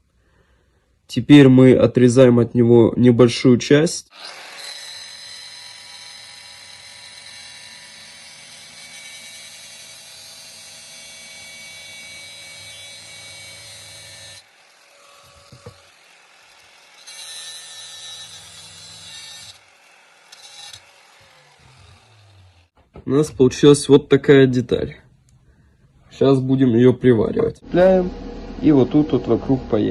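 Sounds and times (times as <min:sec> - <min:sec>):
power tool cutting metal: 0:04.1 - 0:22.8.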